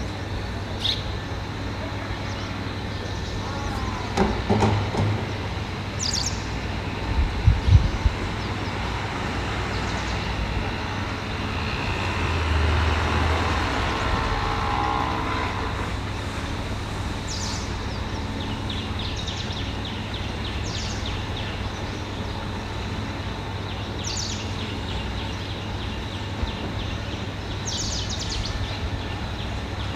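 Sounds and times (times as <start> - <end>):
heavy machinery running: 6.6 - 23.5.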